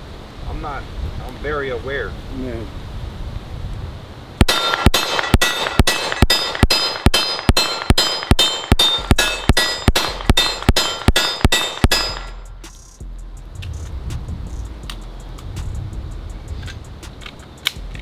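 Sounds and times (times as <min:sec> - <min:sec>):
rapid pistol shots: 0:04.4 - 0:12.4
steel targets ringing: 0:04.4 - 0:12.5.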